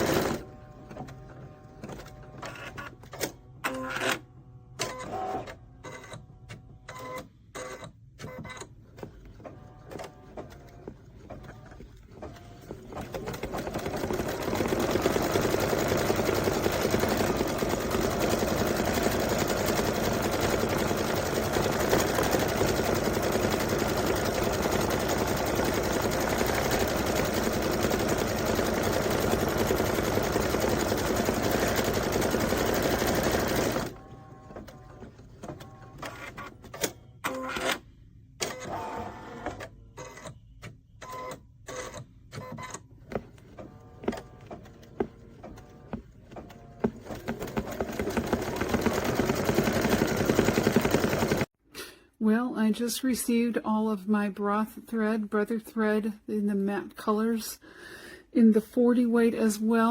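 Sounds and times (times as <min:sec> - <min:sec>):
embroidery machine stitching: 0:00.0 - 0:04.2, 0:09.4 - 0:37.6, 0:41.0 - 0:51.5.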